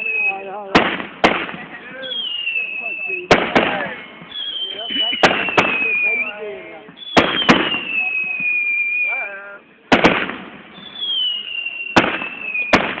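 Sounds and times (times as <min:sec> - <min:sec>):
firework whistle falling in pitch: 0:00.0 - 0:00.5, 0:02.0 - 0:09.3, 0:10.8 - 0:12.8
firework bangs: 0:00.0 - 0:09.1, 0:09.8 - 0:13.0.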